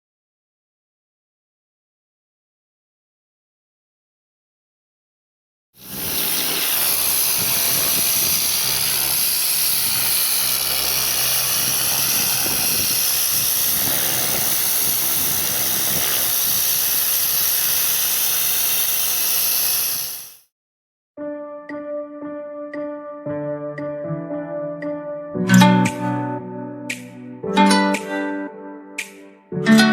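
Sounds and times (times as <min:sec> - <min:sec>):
pressure washer water jet hissing: 0:05.8 - 0:20.5.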